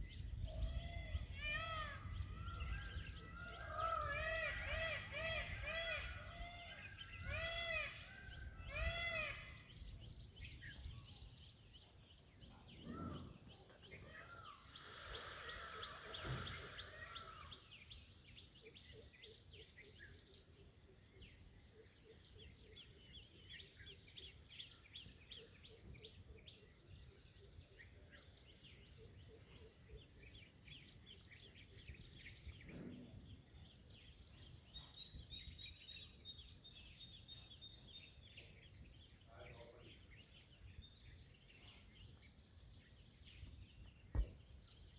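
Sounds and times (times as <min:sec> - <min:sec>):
small birds chirping: 0:00.0 - 0:44.9.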